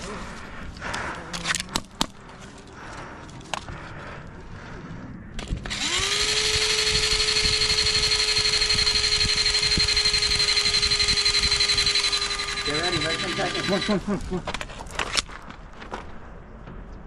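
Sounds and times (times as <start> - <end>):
electric alarm siren: 5.7 - 14.0.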